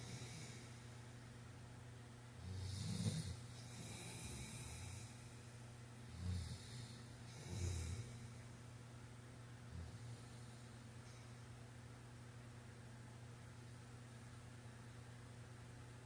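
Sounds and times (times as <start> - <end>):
man snoring: 0.0 - 0.7, 2.4 - 5.2, 6.1 - 8.2.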